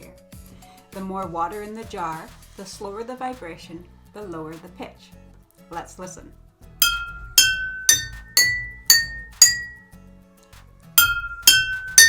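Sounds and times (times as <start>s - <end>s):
spoon striking glass jars: 6.8s - 9.8s, 11.0s - 12.0s.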